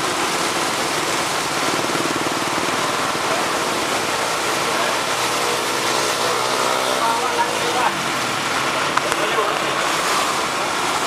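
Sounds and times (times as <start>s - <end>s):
truck engine running: 0.0s - 6.4s
rush of water noise: 0.0s - 11.0s.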